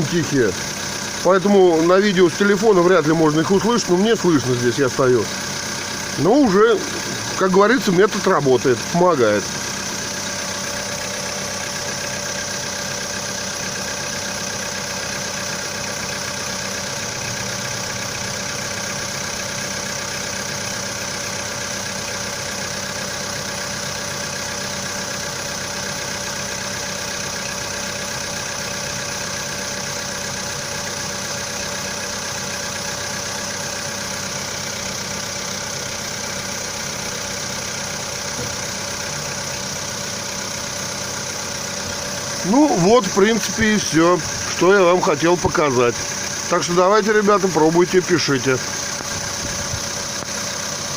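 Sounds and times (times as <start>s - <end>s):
faint engine tapping: 0.0s - 17.2s, 36.9s - 50.9s
car engine idling: 0.0s - 50.9s.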